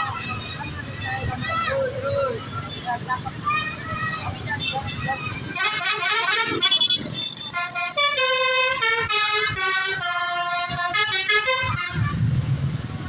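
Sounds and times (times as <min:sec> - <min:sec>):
musical air horn tune: 0:07.6 - 0:12.2.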